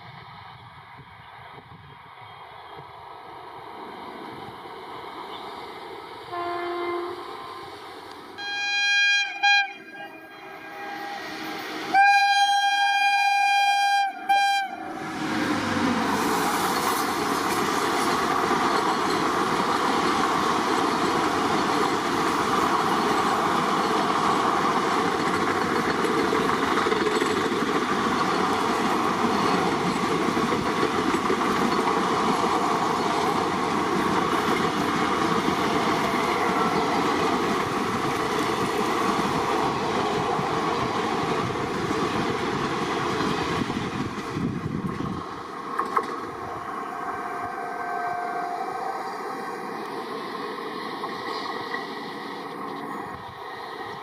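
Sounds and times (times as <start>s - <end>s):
locomotive horn blasts: 6.3s - 7.5s, 8.4s - 15.0s, 46.9s - 48.8s
train wheels rumbling on rails: 10.6s - 54.0s.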